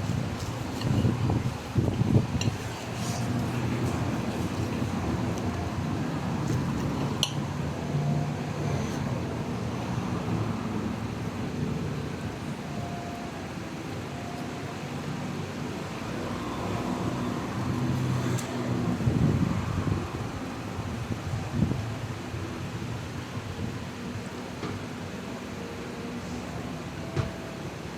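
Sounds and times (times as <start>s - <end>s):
low hum with hiss: 19.0s - 27.9s.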